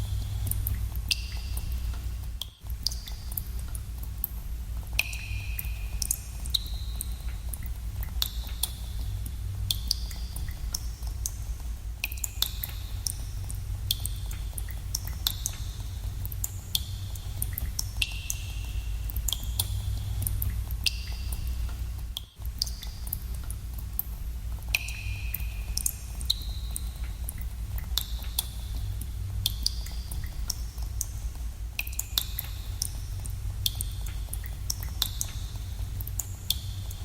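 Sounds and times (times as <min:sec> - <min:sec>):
water drops plinking into pool: 0:05.0 - 0:08.8, 0:16.2 - 0:23.5, 0:24.7 - 0:28.5, 0:31.8 - 0:33.0, 0:33.6 - 0:37.0.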